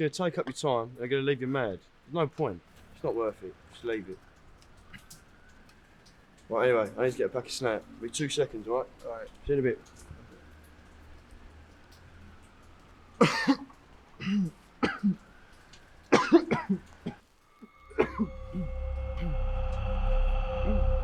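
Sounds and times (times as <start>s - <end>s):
person coughing: 13.2s - 15.2s, 16.2s - 17.2s, 17.9s - 18.7s
droning music of held tones: 17.5s - 21.0s.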